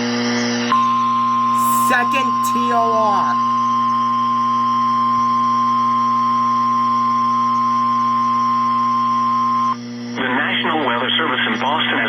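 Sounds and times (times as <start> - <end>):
high alert tone: 0.7 - 3.7.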